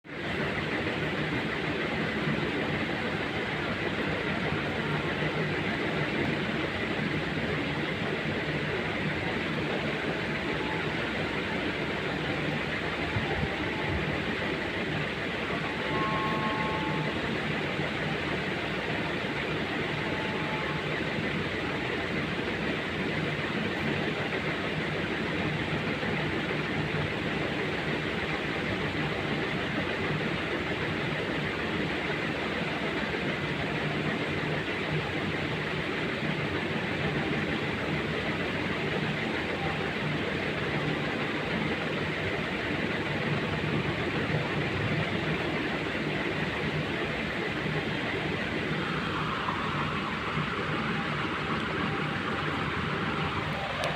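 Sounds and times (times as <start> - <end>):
machine running with low hum: 0.1 - 53.9
faint high tone: 10.1 - 21.9, 48.4 - 53.9.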